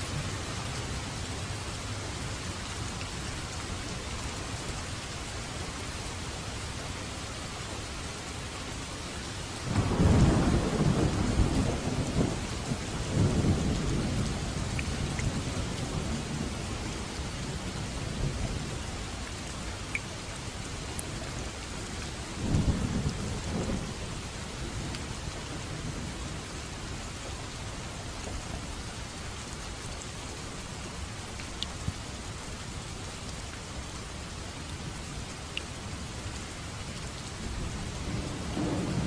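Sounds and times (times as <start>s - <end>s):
steady rain falling: 0.0s - 39.0s
thunder rumbling: 9.7s - 18.8s, 22.4s - 26.4s, 37.4s - 39.0s.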